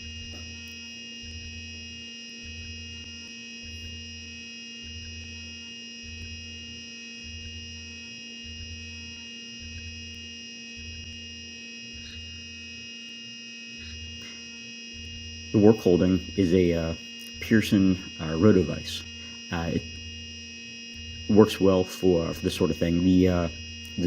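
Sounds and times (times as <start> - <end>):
milling machine whine: 0.0 - 24.0.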